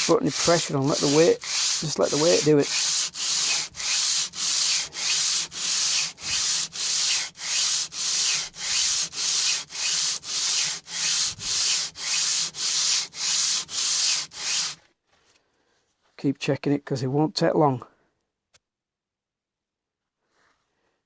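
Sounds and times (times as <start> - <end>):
plane sole rasping on abrasive: 0.0 - 14.8.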